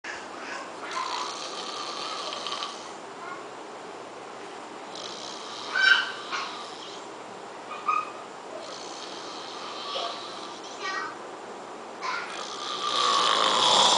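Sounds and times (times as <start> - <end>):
man snoring: 1.0 - 2.9, 4.9 - 7.0, 8.6 - 10.8, 12.3 - 13.9.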